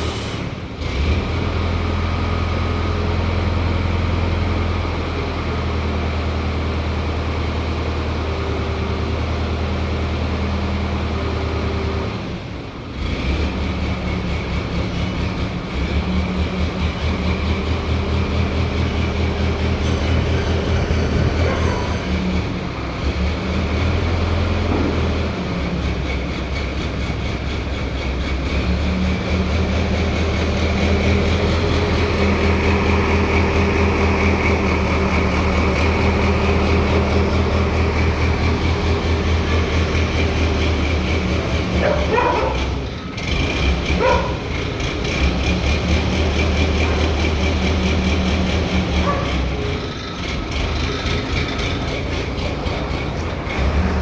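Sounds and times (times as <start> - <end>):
crane engine droning: 0.0 - 54.0
dog barking: 21.3 - 22.1, 41.7 - 42.8, 44.0 - 44.5, 49.0 - 49.4.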